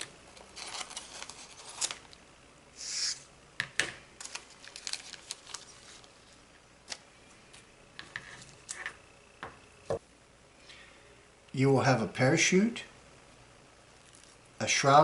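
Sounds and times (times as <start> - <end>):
plastic bag crinkling: 0.3 - 2.2, 4.2 - 6.3.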